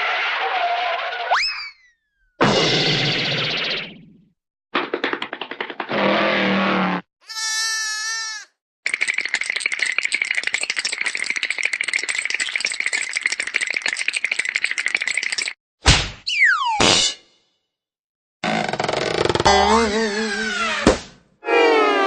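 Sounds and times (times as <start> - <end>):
fast clicking rattle: 8.9 - 15.6.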